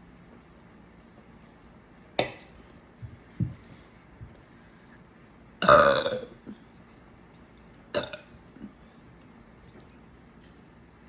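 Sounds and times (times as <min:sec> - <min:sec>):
woman burping: 0:05.6 - 0:06.6, 0:08.0 - 0:08.7.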